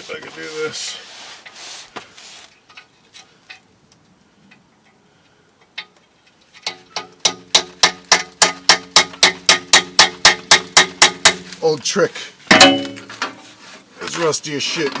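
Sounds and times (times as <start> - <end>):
hammer striking metal: 6.7 - 11.4, 12.5 - 13.4.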